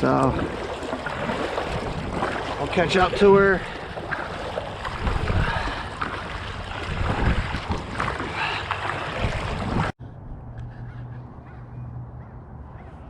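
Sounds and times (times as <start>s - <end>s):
paddle splashing in water: 0.0s - 9.9s
wind buffeting microphone: 0.0s - 12.0s.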